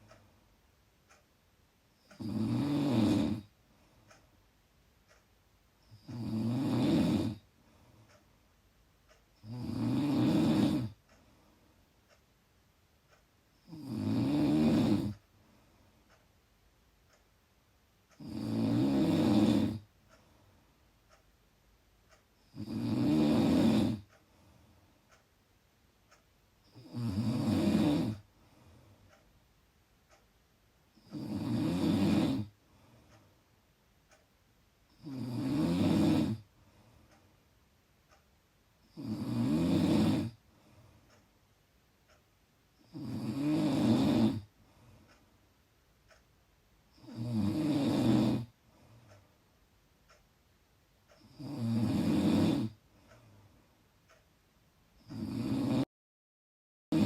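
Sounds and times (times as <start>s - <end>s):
quiet breathing: 0.0s - 1.3s, 1.9s - 17.4s, 18.0s - 21.4s, 22.0s - 50.3s, 51.0s - 55.4s
loud rasping snores: 2.1s - 3.5s, 5.9s - 7.5s, 9.4s - 11.0s, 13.6s - 15.2s, 18.2s - 19.9s, 22.4s - 24.1s, 26.7s - 28.3s, 31.0s - 32.6s, 34.9s - 36.5s, 38.9s - 40.4s, 42.8s - 44.5s, 47.0s - 48.6s, 51.2s - 52.8s, 55.0s - 55.9s.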